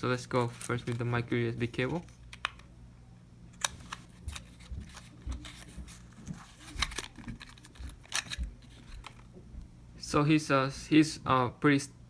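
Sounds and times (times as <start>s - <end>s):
faint low hum: 0.0s - 12.0s
clicks and rustles of handling: 3.5s - 9.3s.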